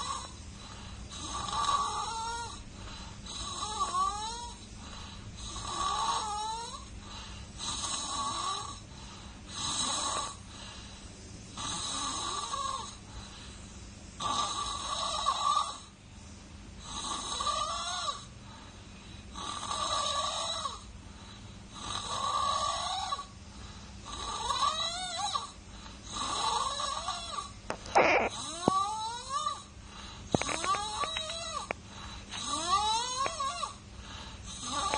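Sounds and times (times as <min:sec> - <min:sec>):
baby snoring: 0:00.0 - 0:00.4, 0:01.1 - 0:02.6, 0:03.3 - 0:04.6, 0:05.4 - 0:06.9, 0:07.6 - 0:08.8, 0:09.5 - 0:10.4, 0:11.6 - 0:13.0, 0:14.2 - 0:15.9, 0:16.8 - 0:18.3, 0:19.4 - 0:20.9, 0:21.8 - 0:23.3, 0:24.1 - 0:29.7, 0:30.3 - 0:31.7, 0:32.3 - 0:33.8, 0:34.4 - 0:34.9.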